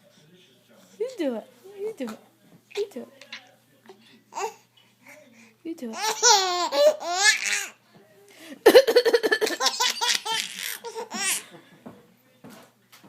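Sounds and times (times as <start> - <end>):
baby laughing: 6.0 - 7.8, 8.6 - 11.6.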